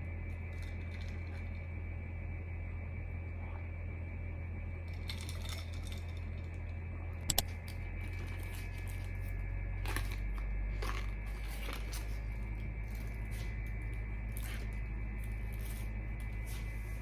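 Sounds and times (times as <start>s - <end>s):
low electrical hum: 0.0s - 17.0s
sharp double click: 7.3s - 7.5s.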